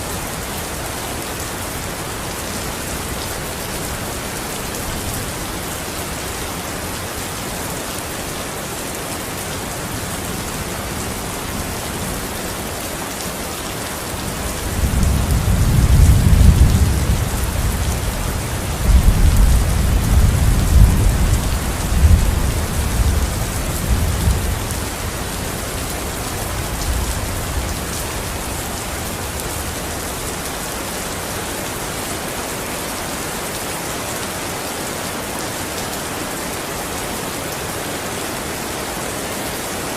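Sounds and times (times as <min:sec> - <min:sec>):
steady rain falling: 0:00.0 - 0:39.9
low rumble of thunder: 0:14.5 - 0:30.1.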